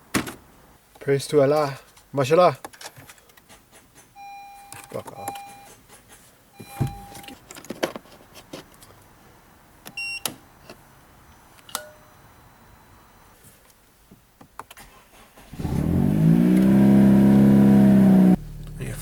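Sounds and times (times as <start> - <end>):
electronic chime beep: 6.6 - 7.3
car engine starting and idling: 14.7 - 19.0.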